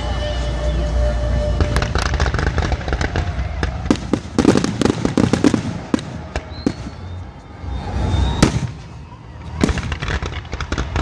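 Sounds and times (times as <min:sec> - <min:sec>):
fireworks crackling and popping: 0:00.0 - 0:11.0.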